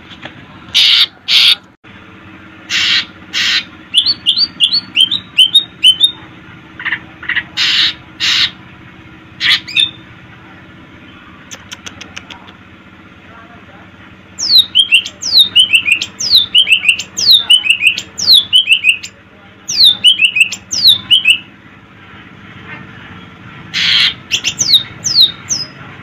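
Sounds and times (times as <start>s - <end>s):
bird harsh rasping calls: 0.7s - 1.7s, 2.6s - 6.2s, 6.8s - 8.6s, 9.4s - 10.0s, 14.4s - 21.5s, 23.7s - 25.8s.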